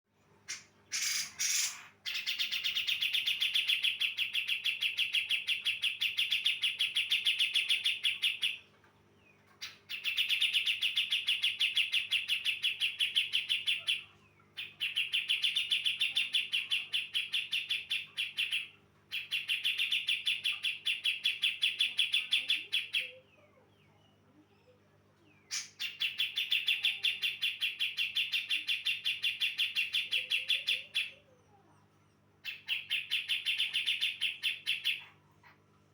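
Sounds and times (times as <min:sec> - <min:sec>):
bird chattering call: 0:00.5 - 0:04.6.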